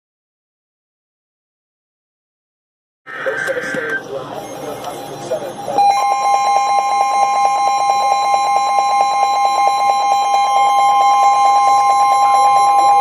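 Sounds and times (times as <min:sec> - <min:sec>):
loud steady electronic tone: 0:03.1 - 0:13.0.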